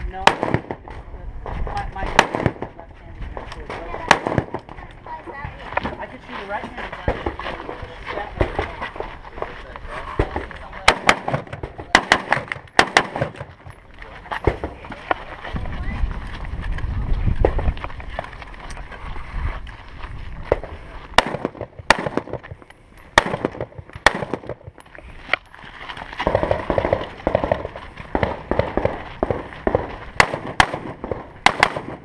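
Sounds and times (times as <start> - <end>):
rifle shots: 0.2 - 1.0, 2.0 - 2.8, 4.0 - 4.7, 10.3 - 13.5, 21.2 - 24.8, 26.2 - 32.0.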